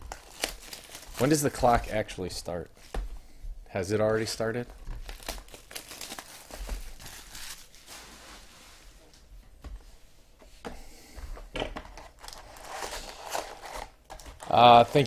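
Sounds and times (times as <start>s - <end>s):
plastic wrapping crinkling and tearing: 0.0s - 2.1s, 4.8s - 8.4s, 11.9s - 15.0s.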